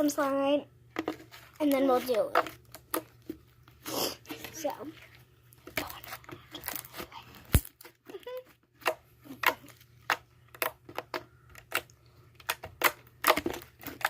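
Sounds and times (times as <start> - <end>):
slime popping and crackling: 8.8 - 14.0.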